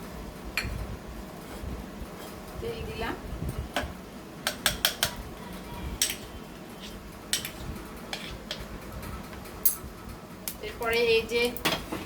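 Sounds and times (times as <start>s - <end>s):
utensils clinking against dishes: 9.6s - 9.9s.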